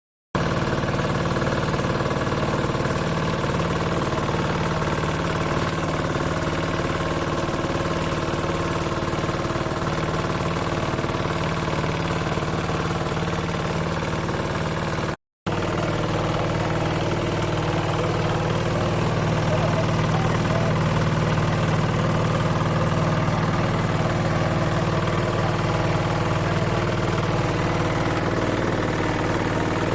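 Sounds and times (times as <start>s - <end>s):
farm machine engine running: 0.4s - 29.9s.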